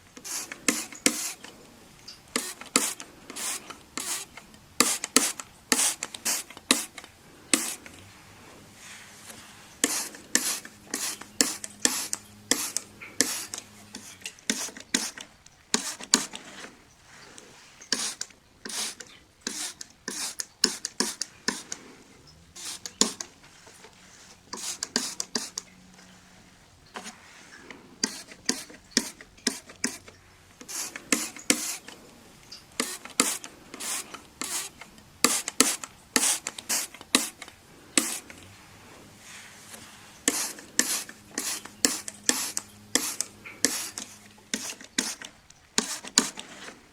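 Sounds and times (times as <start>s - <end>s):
glass being wiped by hand: 7.5s - 15.2s, 22.6s - 25.8s, 32.8s - 37.4s.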